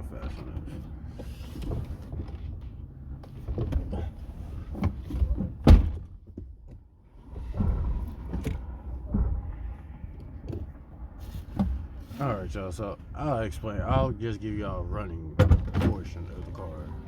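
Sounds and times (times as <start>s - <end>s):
loud thump: 5.6s - 6.1s.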